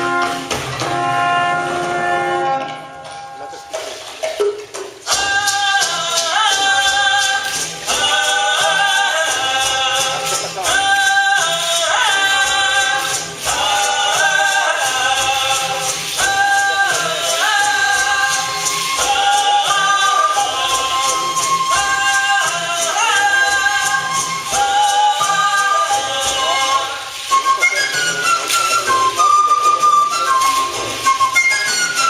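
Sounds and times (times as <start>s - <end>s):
rhythmic clicking beat: 3.4s - 32.0s
group singing a chant: 5.0s - 29.4s.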